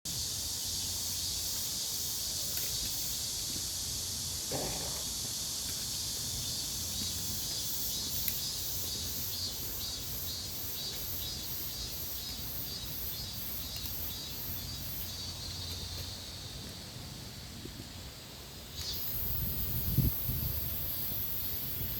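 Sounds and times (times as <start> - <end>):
insects chirping shrilly: 0.1 - 16.2, 18.7 - 21.9.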